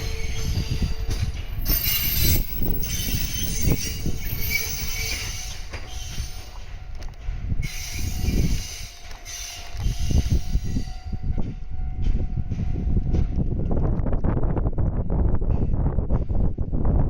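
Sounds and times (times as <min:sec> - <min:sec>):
high wheel squeal: 0:00.0 - 0:06.8, 0:07.6 - 0:11.1
train wheel rumble: 0:00.0 - 0:17.0.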